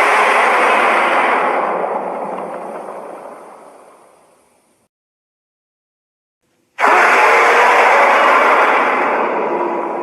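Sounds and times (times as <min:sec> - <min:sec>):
harsh monster roar: 0:00.0 - 0:01.8, 0:06.8 - 0:10.0.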